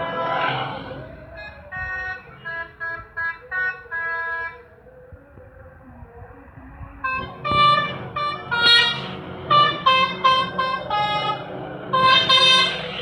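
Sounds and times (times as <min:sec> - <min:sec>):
musical air horn tune: 0:07.0 - 0:13.0.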